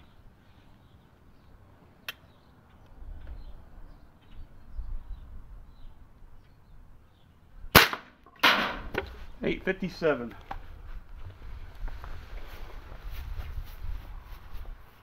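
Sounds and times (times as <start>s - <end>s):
air rifle shot: 7.7s - 9.0s.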